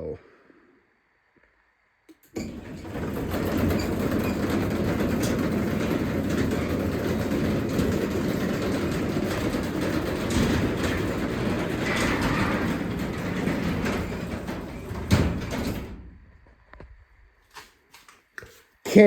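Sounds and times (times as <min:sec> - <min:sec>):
garage door clicks and rattles: 0:02.1 - 0:16.4
garage door opener motor rumble: 0:02.2 - 0:16.5.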